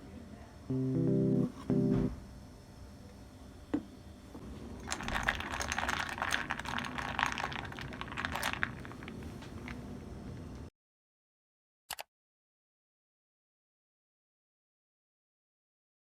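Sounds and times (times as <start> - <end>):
crinkling and rustling: 4.8 - 9.9.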